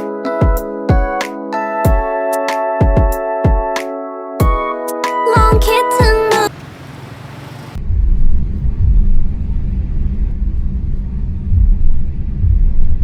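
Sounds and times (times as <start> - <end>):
uneven low rumble: 7.8 - 13.0.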